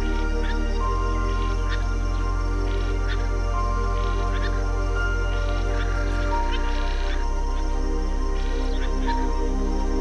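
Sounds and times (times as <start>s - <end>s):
calm ambient music with low drone: 0.0s - 10.0s.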